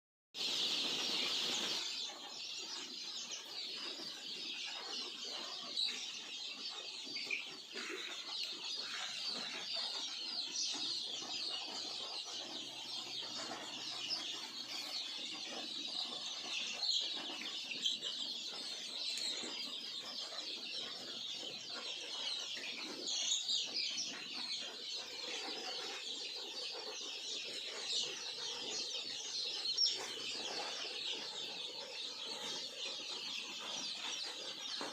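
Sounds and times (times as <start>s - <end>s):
chickens clucking: 0.4s - 34.9s.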